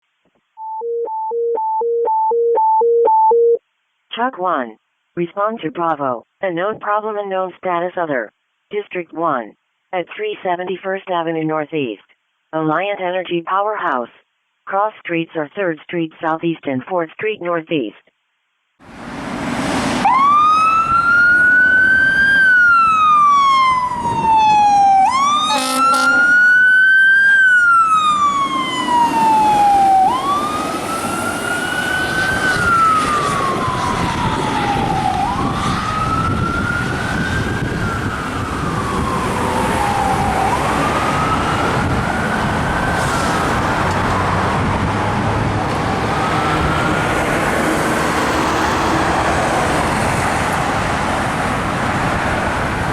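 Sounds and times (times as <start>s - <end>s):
traffic noise: 18.8s - 52.9s
fire truck siren wailing: 19.0s - 52.9s
air horn blast: 25.4s - 26.5s.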